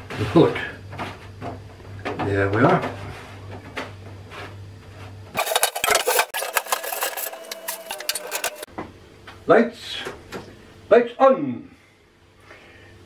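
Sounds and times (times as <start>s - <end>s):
faint room hum: 0.0s - 13.0s
scraping and rubbing with clicks: 4.3s - 8.7s.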